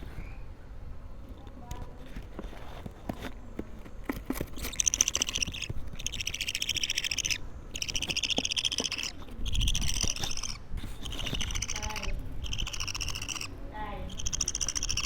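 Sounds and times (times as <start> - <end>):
budgerigar chick calling: 4.6 - 15.0.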